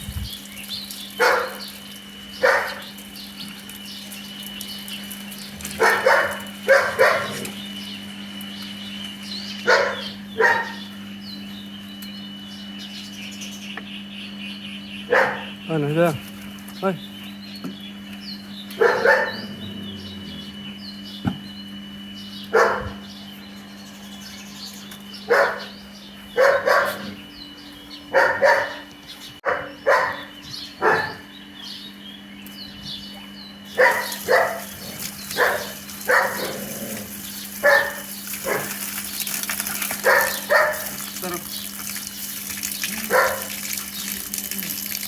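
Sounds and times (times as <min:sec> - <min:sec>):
dog barking: 0:01.2 - 0:01.6, 0:02.4 - 0:02.8, 0:05.8 - 0:07.5, 0:09.6 - 0:10.9, 0:15.1 - 0:15.6, 0:18.8 - 0:19.6, 0:22.5 - 0:23.0, 0:25.3 - 0:27.2, 0:28.1 - 0:31.3, 0:33.7 - 0:36.7, 0:37.6 - 0:38.8, 0:40.0 - 0:40.9, 0:43.0 - 0:43.6.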